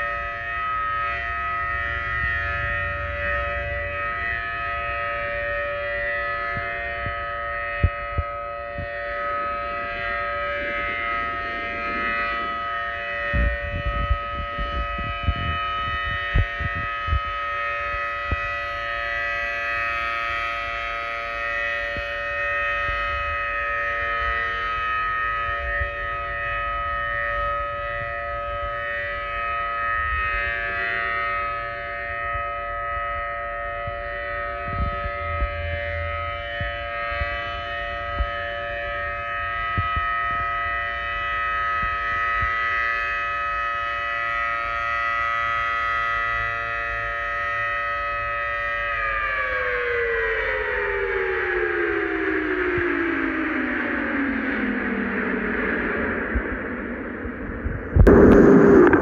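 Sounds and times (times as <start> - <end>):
warning siren steady tone: 0.0 - 59.0
low thumps and rumbles: 57.2 - 59.0.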